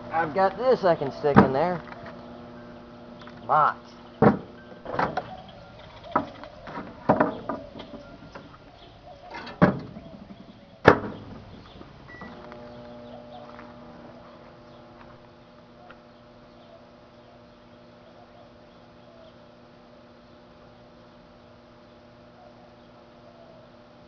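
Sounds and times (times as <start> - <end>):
microwave oven humming: 0.0 - 24.0
knocks and clunks of handling: 4.2 - 5.4, 6.0 - 8.6, 9.3 - 12.5.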